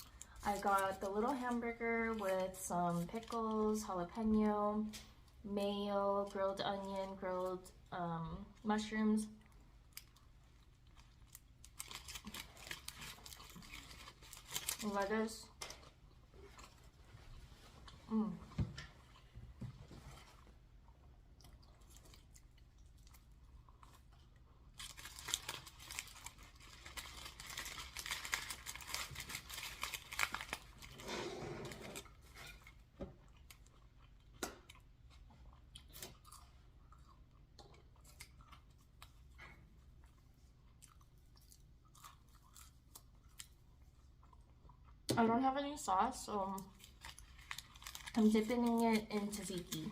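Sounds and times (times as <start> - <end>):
food crunching: 9.3 - 18.1, 18.7 - 31.1, 31.7 - 45.1, 46.3 - 49.9
person chewing food: 15.6 - 31.1, 31.7 - 45.1.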